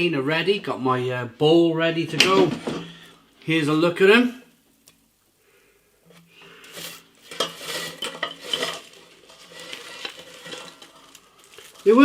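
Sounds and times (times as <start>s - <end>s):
potato wedges clattering on metal: 6.7s - 12.0s.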